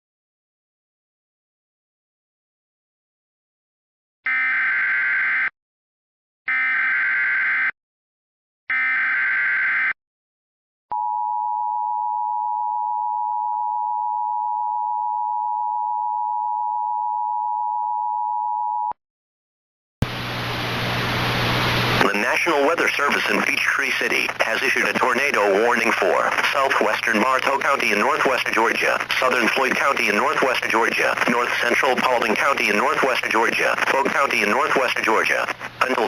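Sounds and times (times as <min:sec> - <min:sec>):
radio static hiss: 0:20.0 - 0:36.0.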